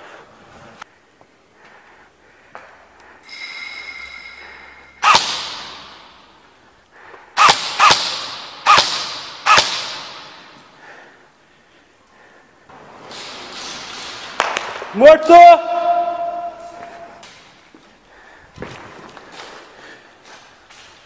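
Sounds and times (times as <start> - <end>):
steady high tone: 3.2 - 6.5
airsoft gun shots with echo: 5.0 - 6.1, 7.4 - 10.5.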